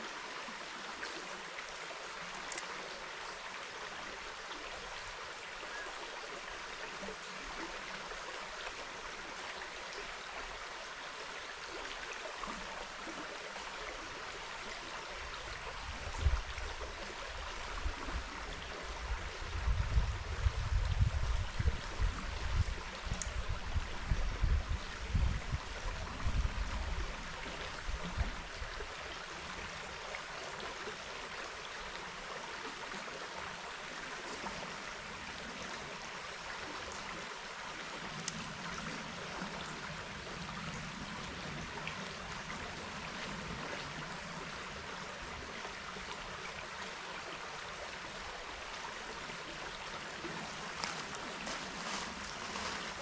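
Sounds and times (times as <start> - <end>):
river water running over rocks: 0.0 - 53.0.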